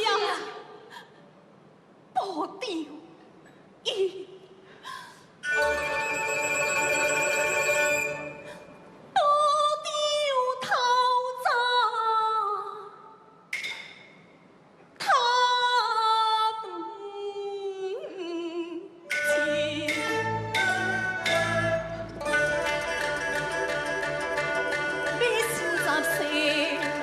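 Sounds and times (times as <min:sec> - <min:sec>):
traditional opera music: 0:05.4 - 0:11.0, 0:18.0 - 0:27.0.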